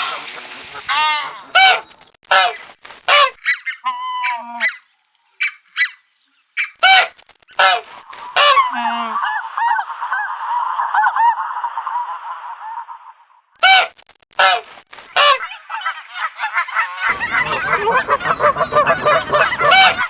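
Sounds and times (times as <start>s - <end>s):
geese honking: 0.0s - 4.8s, 6.8s - 10.6s, 13.6s - 15.5s, 16.7s - 20.0s.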